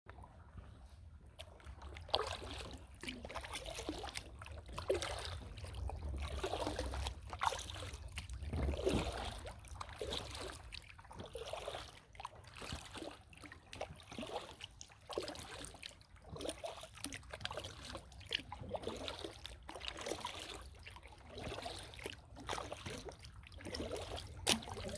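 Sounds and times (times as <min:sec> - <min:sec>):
paddle splashing in water: 0:00.1 - 0:24.9
low rumble: 0:04.4 - 0:10.8.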